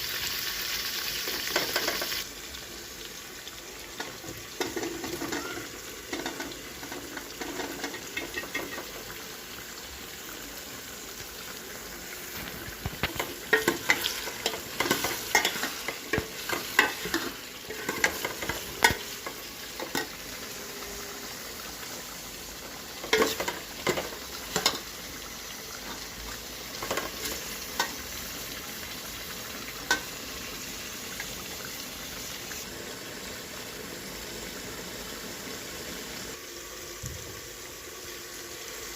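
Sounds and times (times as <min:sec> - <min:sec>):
food sizzling in a pan: 0:00.0 - 0:38.9
utensil scraping a pan: 0:12.3 - 0:20.2.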